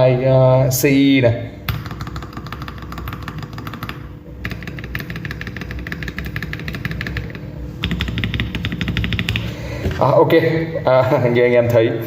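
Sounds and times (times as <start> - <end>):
fast typing on mechanical keyboard: 1.8 - 9.4.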